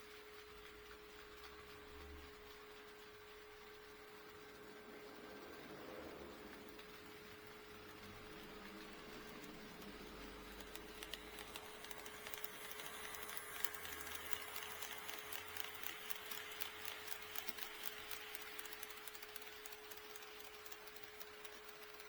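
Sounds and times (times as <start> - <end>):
model train wheels clicking: 0.0 - 22.0.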